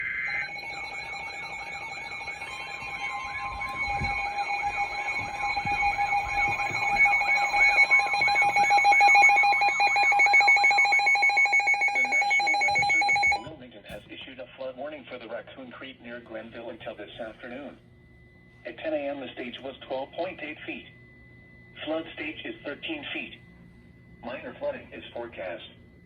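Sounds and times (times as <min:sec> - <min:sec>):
two-tone alarm: 0:00.0 - 0:13.5, 0:16.9 - 0:26.0
warbling tone: 0:00.0 - 0:13.5.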